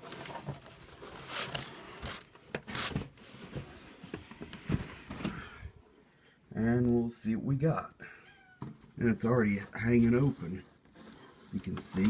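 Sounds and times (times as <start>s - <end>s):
cardboard rustling and scraping: 0.0s - 5.6s, 9.0s - 12.0s.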